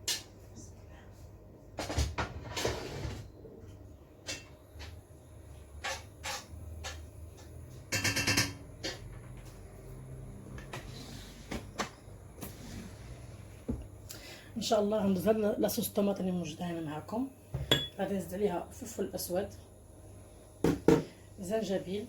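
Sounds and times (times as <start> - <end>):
utensil knocking on cooking pot: 20.6 - 21.1.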